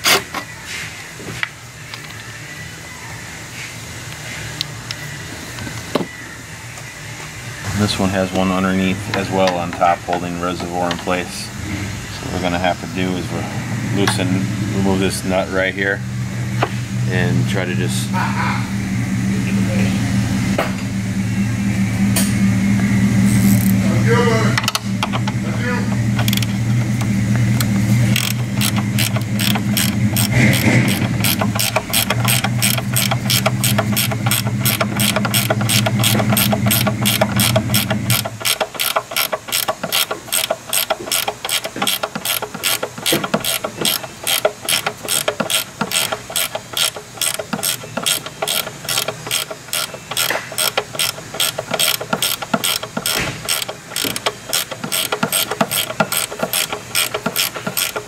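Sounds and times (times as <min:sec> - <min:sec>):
steady low hum: 0:00.5 - 0:58.0
ratchet wrench clicking: 0:23.4 - 0:23.8, 0:24.6 - 0:58.0.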